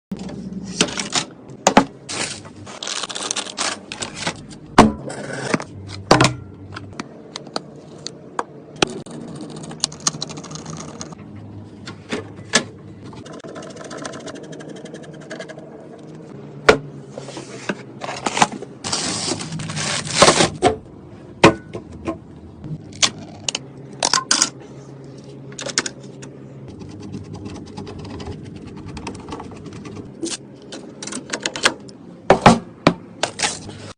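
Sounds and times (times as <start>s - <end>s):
computer hardware clicks and scrapes: 13.2s - 15.7s.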